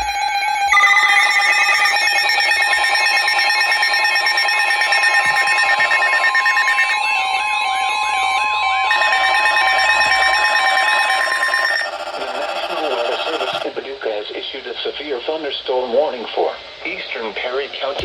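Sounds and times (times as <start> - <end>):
electronic alarm tones: 0.0 - 13.6
warbling alarm sweeps: 0.0 - 13.6
steady beeps: 0.7 - 7.2, 8.2 - 13.6
steady electronic tone: 0.7 - 7.2.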